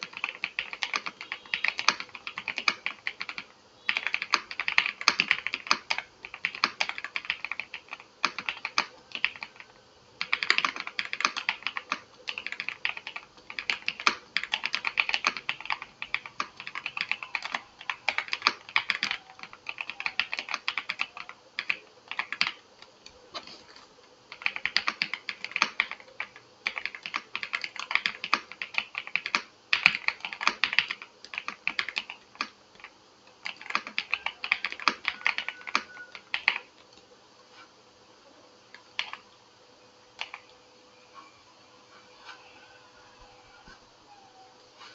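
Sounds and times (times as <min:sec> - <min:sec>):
mechanical keyboard typing: 0:00.0 - 0:22.6, 0:24.3 - 0:36.7, 0:39.0 - 0:39.2, 0:40.2 - 0:40.4.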